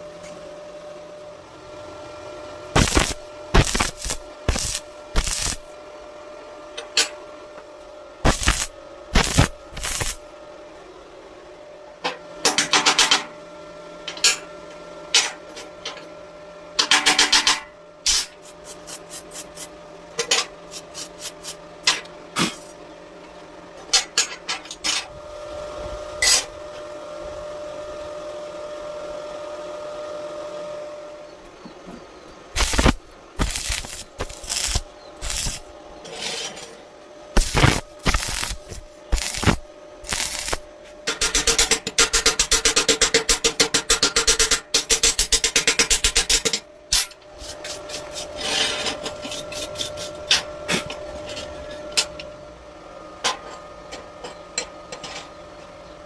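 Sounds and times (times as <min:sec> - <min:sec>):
steady hum: 0:02.7 - 0:06.4, 0:07.4 - 0:11.9, 0:16.4 - 0:22.8, 0:32.3 - 0:36.2, 0:36.8 - 0:53.2.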